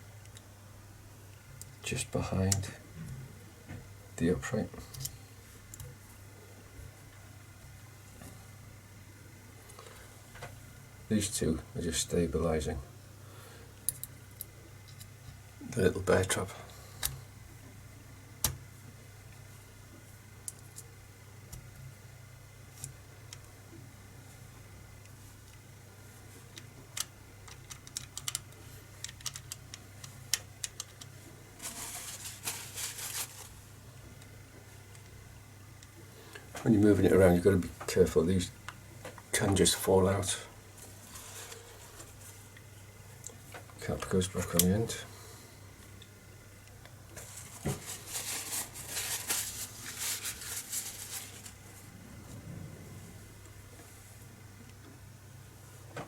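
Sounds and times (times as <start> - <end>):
small metal parts clicking: 27.0 - 29.7.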